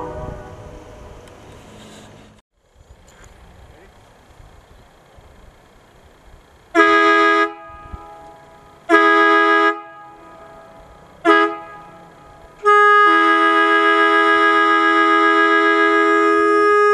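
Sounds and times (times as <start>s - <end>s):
locomotive air horn blasts: 0.0s - 1.2s, 6.7s - 16.9s.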